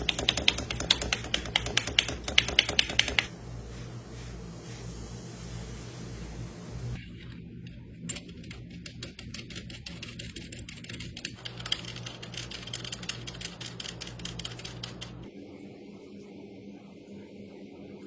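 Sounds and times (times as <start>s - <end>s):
rapid irregular clicking: 0.0s - 3.3s, 8.1s - 15.3s.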